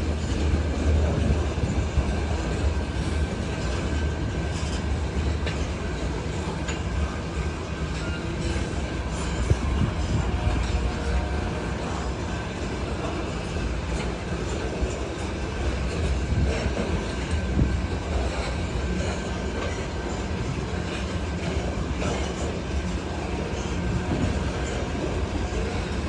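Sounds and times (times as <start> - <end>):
rail clacking: 0.0 - 26.0
train wheels rumbling on rails: 0.0 - 26.0.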